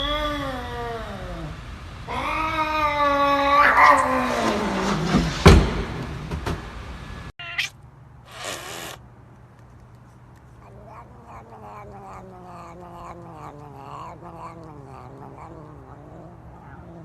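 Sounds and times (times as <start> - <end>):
cat yowling: 2.1 - 4.4, 7.4 - 9.0, 10.6 - 17.0
short hissy burst: 8.3 - 9.0.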